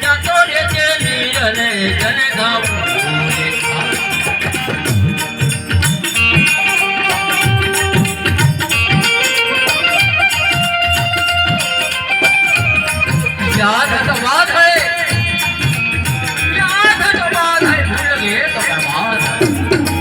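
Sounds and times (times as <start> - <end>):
drum rhythm: 0.0 - 20.0
rattling percussion: 0.0 - 20.0
sliding melody line: 1.1 - 20.0.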